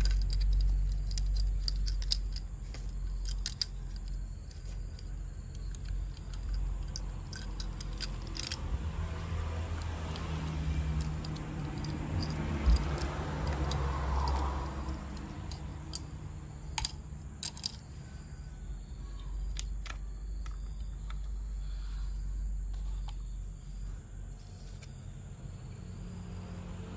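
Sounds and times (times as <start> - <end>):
plastic toy parts clicking: 0.0 - 8.8, 9.7 - 17.9, 19.4 - 21.3
steady low hum: 0.0 - 26.9.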